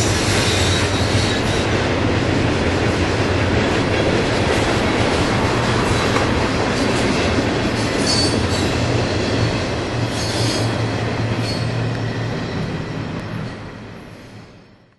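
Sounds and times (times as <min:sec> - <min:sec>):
train wheels rumbling on rail: 0:00.0 - 0:14.9
high wheel squeals: 0:08.0 - 0:09.3, 0:10.0 - 0:10.8, 0:11.4 - 0:13.6.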